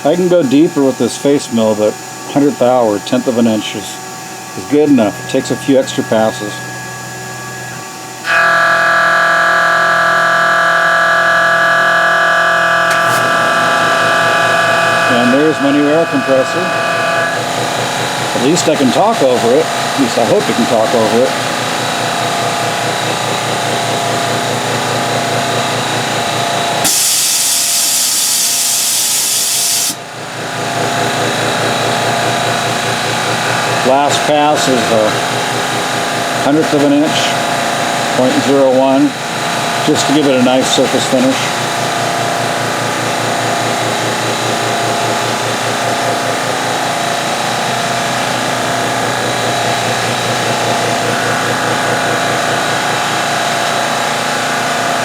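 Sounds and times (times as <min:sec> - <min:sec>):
air compressor humming: 0:00.0 - 0:55.0
milling machine running: 0:00.0 - 0:55.0
compressed air blast hissing: 0:26.8 - 0:30.0.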